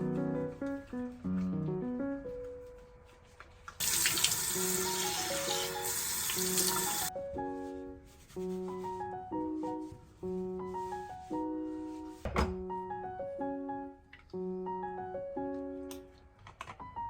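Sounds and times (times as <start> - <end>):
background music: 0.0 - 17.0
water running: 3.8 - 7.1.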